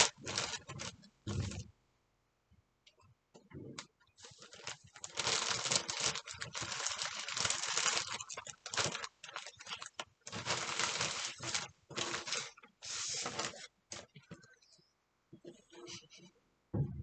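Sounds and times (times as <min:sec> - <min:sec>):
packaging crinkling and rustling: 0:00.0 - 0:01.6, 0:04.2 - 0:14.4.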